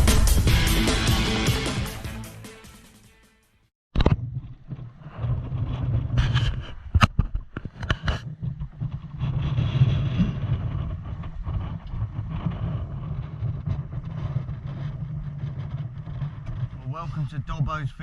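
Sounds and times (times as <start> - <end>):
wind buffeting microphone: 4.0 - 18.0.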